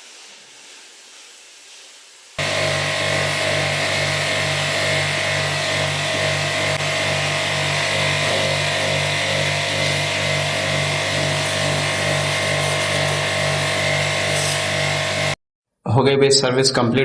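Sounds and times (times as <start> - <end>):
water spray hissing: 0.0 - 15.3
pressure washer motor hum: 2.4 - 15.4.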